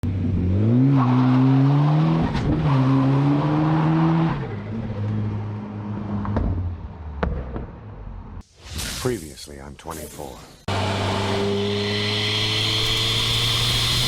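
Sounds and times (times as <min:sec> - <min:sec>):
car engine accelerating hard: 0:10.7 - 0:14.0.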